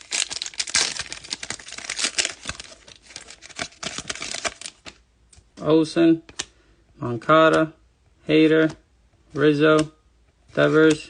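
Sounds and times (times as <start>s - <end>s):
wrapper tearing and crinkling: 0.0s - 5.0s.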